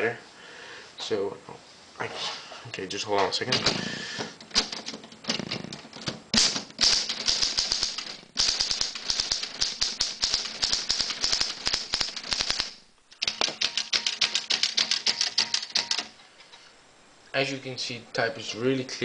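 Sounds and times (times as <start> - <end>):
manual typewriter typing: 4.4 - 16.2.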